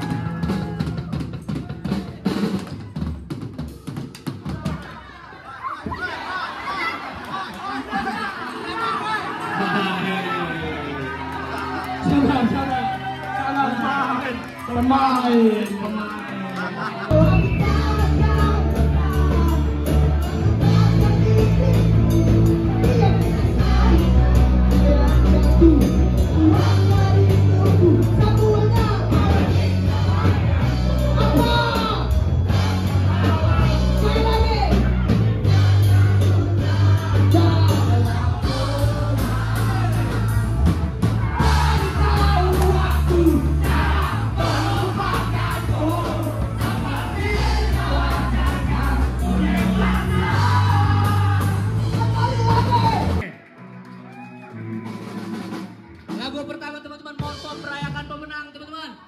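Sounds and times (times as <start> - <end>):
crowd shouting: 0.0 - 3.1, 3.7 - 53.5
band-style pop music: 0.0 - 59.0
voices singing along: 16.6 - 53.2.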